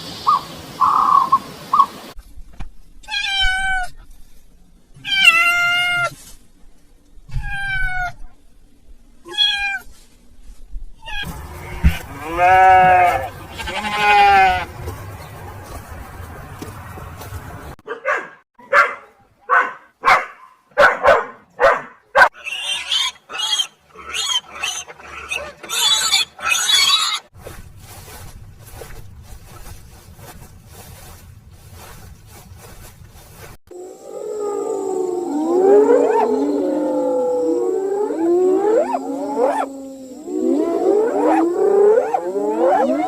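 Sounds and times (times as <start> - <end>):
higher chattering calls: 0.2 - 2.1, 11.2 - 14.8
overlapping sliding animal calls: 11.2 - 14.7.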